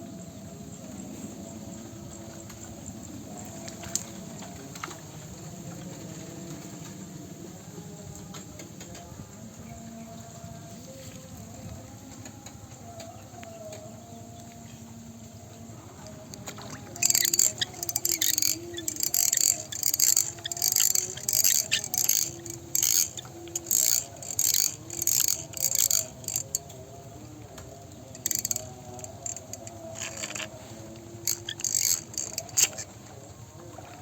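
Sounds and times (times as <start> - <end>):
fishing reel ratcheting: 2.0 - 7.6, 15.1 - 33.9.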